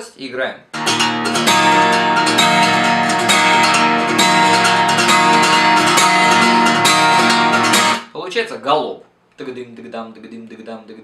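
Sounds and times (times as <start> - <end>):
guitar strumming: 0.7 - 8.1.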